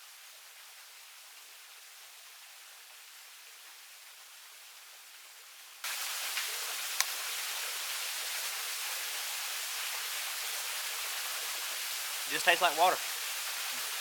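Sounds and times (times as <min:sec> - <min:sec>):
faint hiss: 0:00.0 - 0:14.0
flowing water rushing: 0:05.8 - 0:14.0.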